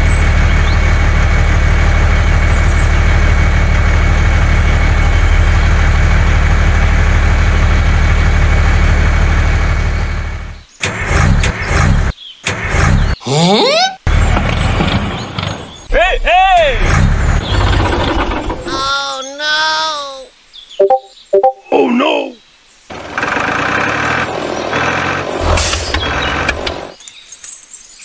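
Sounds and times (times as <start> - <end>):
engine humming: 0.0 - 12.1, 13.1 - 19.0, 22.9 - 27.0.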